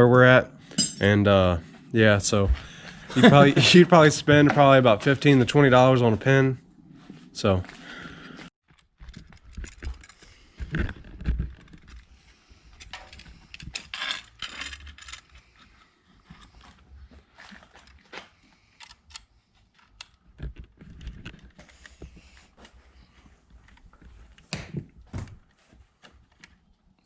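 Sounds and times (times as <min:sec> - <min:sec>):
metal tools clinking: 0:00.7 - 0:01.2, 0:12.8 - 0:15.4.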